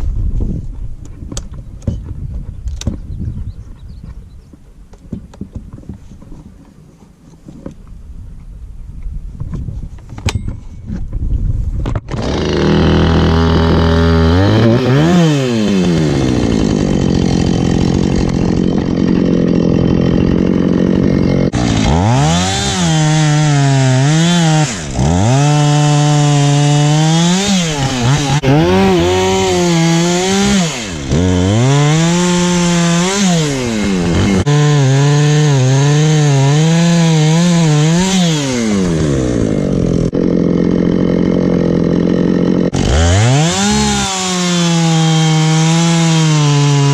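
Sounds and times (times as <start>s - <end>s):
chainsaw cutting wood: 11.9s - 46.9s.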